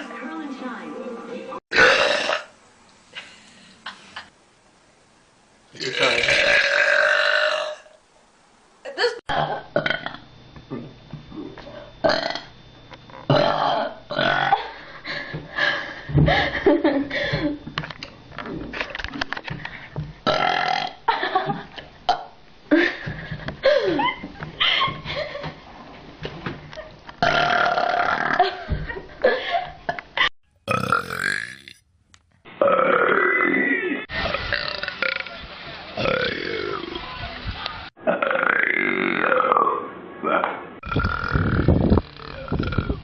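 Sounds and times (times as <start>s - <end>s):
short belches: 1.7s - 2.5s, 5.8s - 7.9s, 9.3s - 10.2s, 12.0s - 12.5s, 13.2s - 14.6s, 20.3s - 21.0s, 27.2s - 28.4s, 30.7s - 31.8s, 38.1s - 43.0s.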